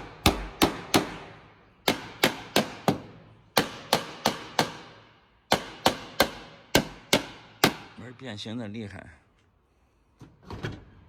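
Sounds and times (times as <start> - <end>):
hammer striking metal door: 0.0 - 8.0.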